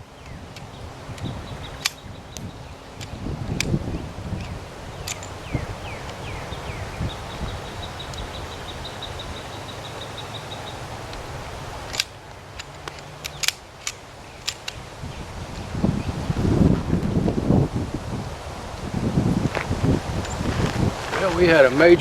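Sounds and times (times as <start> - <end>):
wind noise: 0.0 - 22.0
sharp clicks: 0.2 - 3.8, 10.1 - 14.8.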